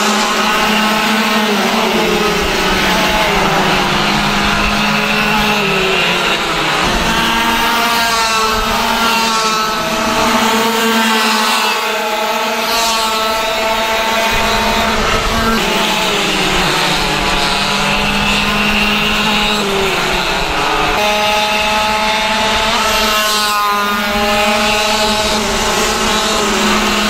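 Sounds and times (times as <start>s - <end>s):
kart engines revving: 0.0s - 27.0s.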